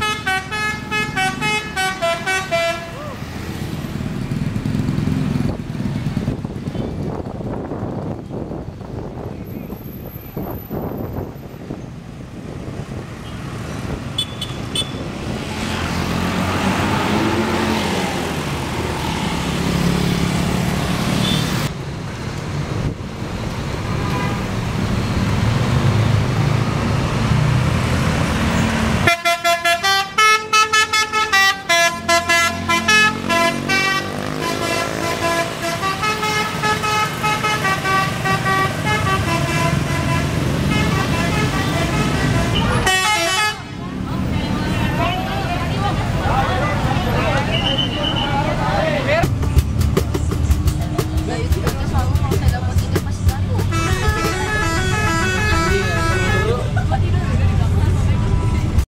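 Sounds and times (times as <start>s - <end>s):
musical air horns: 0.0s - 3.1s, 29.0s - 43.7s, 53.6s - 56.7s
bus engine: 0.0s - 58.9s
road traffic: 0.0s - 58.9s.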